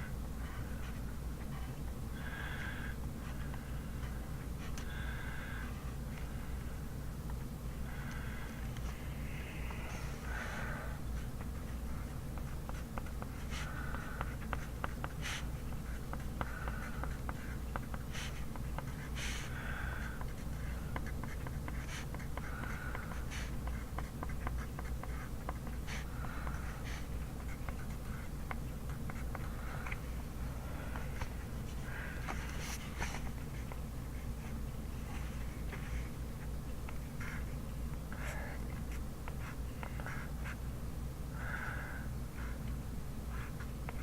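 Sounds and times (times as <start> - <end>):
pen scratching on paper: 11.2 - 30.0, 36.9 - 37.5.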